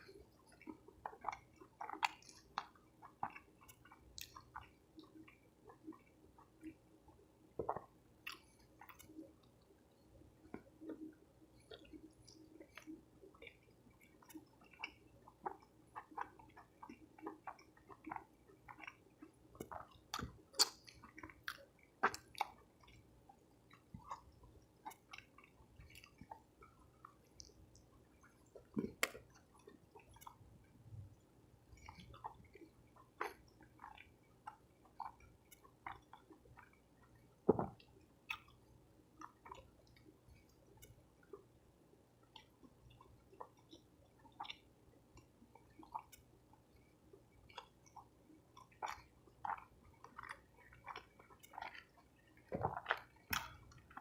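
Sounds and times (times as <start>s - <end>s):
person chewing: 0.0s - 6.8s, 7.6s - 9.4s, 10.5s - 30.4s, 31.7s - 41.4s, 42.3s - 54.0s.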